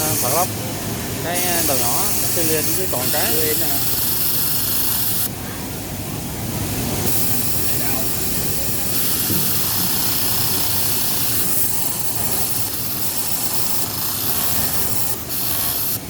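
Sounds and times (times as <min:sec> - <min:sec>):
sewing machine whirring: 0:07.0 - 0:16.0.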